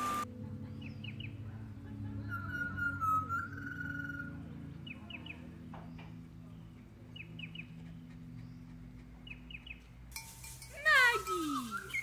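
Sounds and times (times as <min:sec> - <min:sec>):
bird whistled call: 0:02.4 - 0:04.4, 0:11.4 - 0:12.0.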